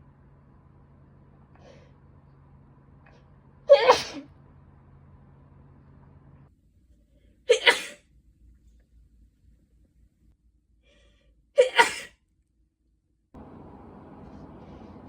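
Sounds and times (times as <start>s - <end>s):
woman sneezing: 3.7s - 4.2s, 7.5s - 8.0s, 11.6s - 12.1s.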